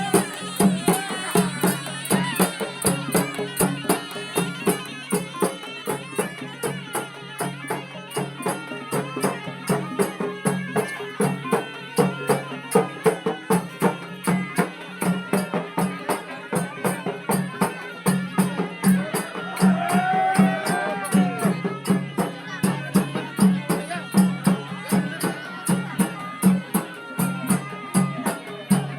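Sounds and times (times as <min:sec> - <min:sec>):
wavering melody: 0:00.0 - 0:06.8
quick percussion beats: 0:00.0 - 0:28.9.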